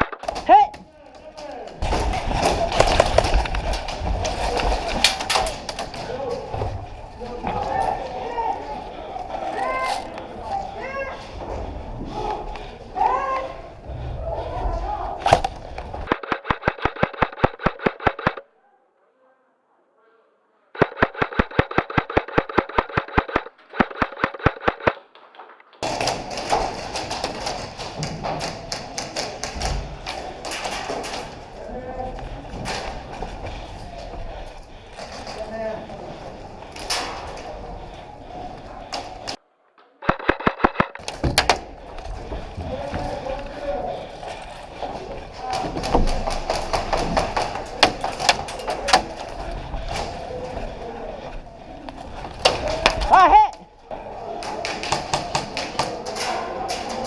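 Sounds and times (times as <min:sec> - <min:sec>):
loud rustling and thumping: 0:01.8 - 0:07.0
sharp clicks and knocks: 0:15.2 - 0:18.4, 0:20.8 - 0:31.4, 0:40.0 - 0:42.4
airsoft gun firing: 0:20.8 - 0:25.0, 0:40.0 - 0:41.6.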